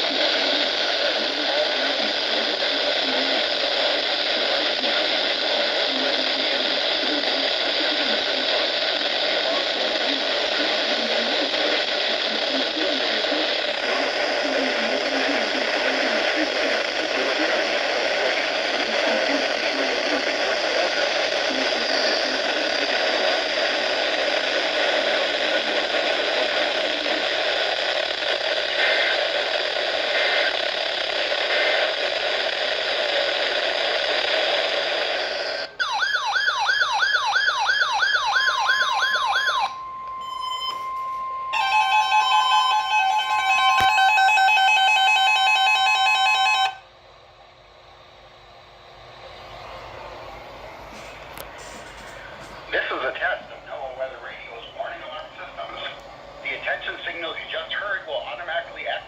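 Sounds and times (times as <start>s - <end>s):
radio static hiss: 0.0s - 35.8s, 45.7s - 59.0s
steady warning tone: 35.7s - 47.0s
repeating alarm beeps: 35.8s - 44.9s
fast warbling electronic alarm: 35.8s - 46.8s.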